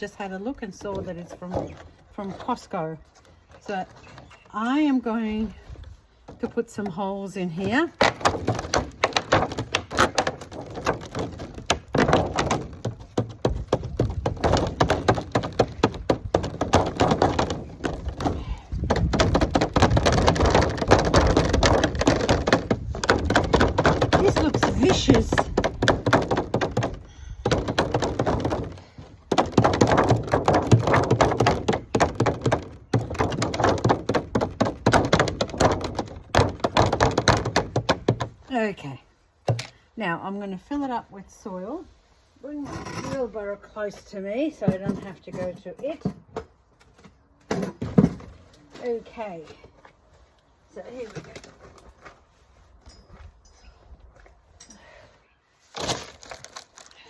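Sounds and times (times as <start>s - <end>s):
plastic container being pierced: 8.0s - 38.4s
plastic packaging crackling: 55.8s - 57.0s.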